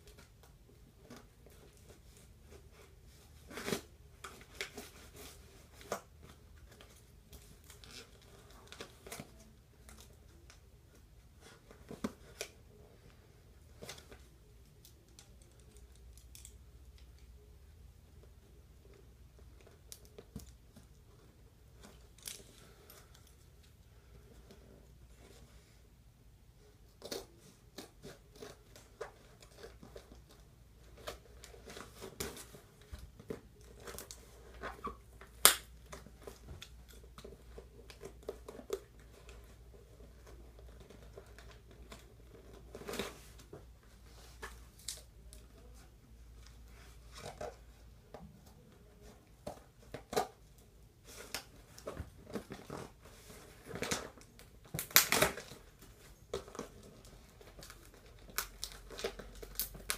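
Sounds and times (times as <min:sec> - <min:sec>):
packaging crinkling and tearing: 0:51.2 - 0:59.9.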